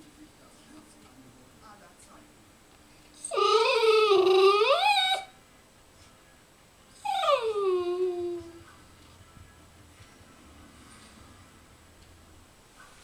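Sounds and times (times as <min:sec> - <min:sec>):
dog howling and whining: 0:03.2 - 0:05.4, 0:07.0 - 0:08.6.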